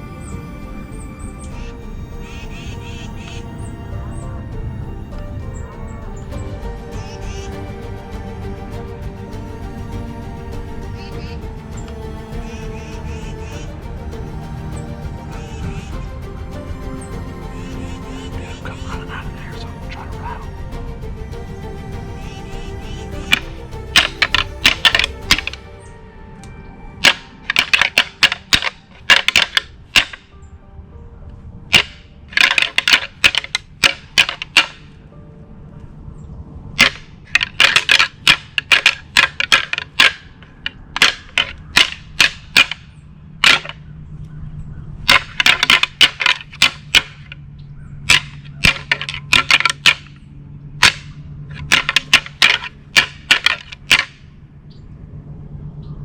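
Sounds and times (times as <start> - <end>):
sharp clacking: 31.7 - 34.9, 36.8 - 40.4, 41.0 - 43.8, 45.1 - 50.2, 50.8 - 54.3.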